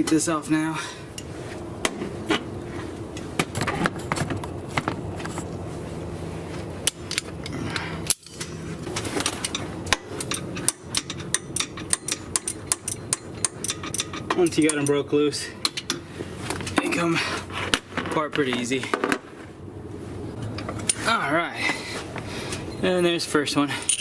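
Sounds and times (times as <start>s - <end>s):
steady low hum: 0.0s - 24.0s
ratcheting wrench clicking: 9.4s - 15.0s.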